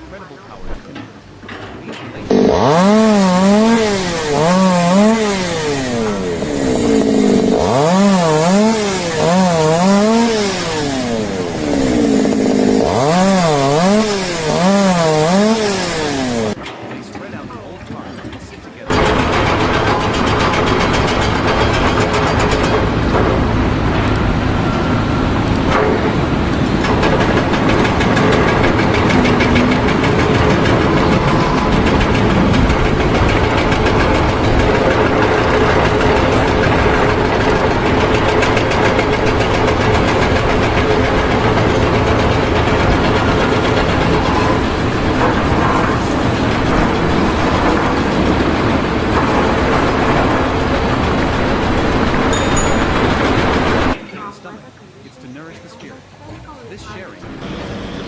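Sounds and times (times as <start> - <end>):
faint steady tones: 0.0 - 12.4
loud machinery noise: 0.0 - 54.2, 55.5 - 58.0.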